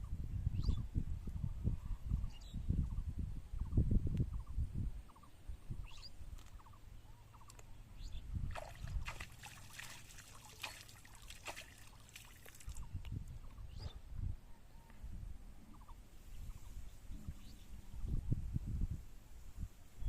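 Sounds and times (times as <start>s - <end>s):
water splashing and trickling: 8.4s - 13.1s
faint bird chirps: 12.8s - 15.1s.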